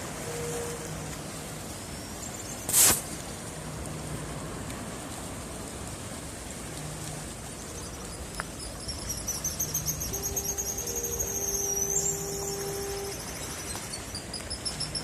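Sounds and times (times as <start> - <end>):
steady hiss: 0.0 - 3.7
bird whistling trill: 8.8 - 15.0.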